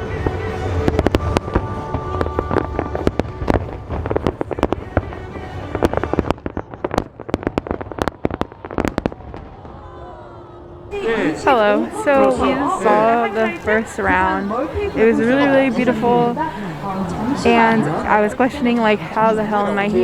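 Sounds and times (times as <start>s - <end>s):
fireworks bursting and crackling: 0.0s - 10.1s, 10.9s - 20.0s
show music: 10.9s - 20.0s.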